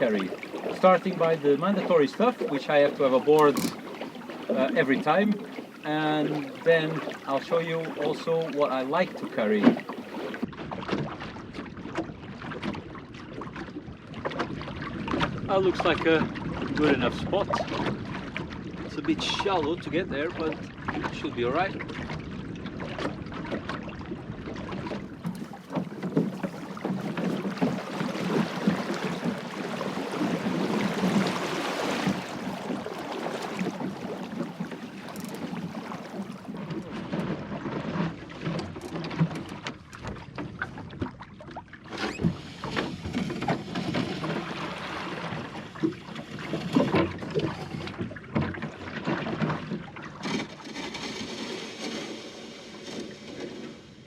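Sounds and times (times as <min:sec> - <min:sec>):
water splashing and sloshing: 0:00.0 - 0:54.0
hull knocks and bumps: 0:24.8 - 0:41.2.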